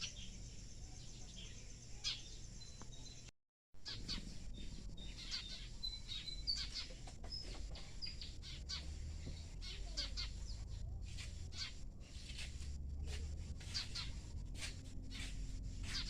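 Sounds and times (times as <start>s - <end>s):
flock of small birds chirping: 0.0s - 16.0s
steady low rumble: 3.8s - 16.0s.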